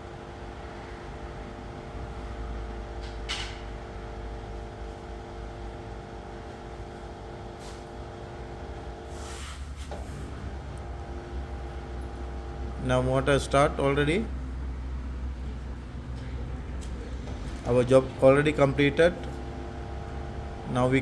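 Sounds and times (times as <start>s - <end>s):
drain pump humming: 10.2s - 14.6s, 17.3s - 21.0s.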